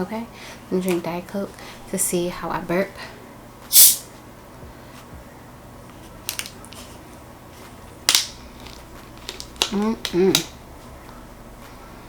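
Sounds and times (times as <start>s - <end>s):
carbonation hiss: 3.7s - 4.1s.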